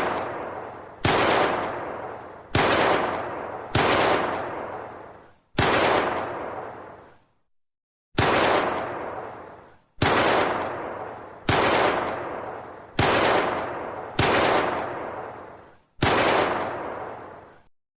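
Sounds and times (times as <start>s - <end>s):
pistol shots echoing: 0.0s - 4.9s, 5.6s - 6.8s, 8.2s - 9.4s, 10.0s - 15.4s, 16.0s - 17.3s.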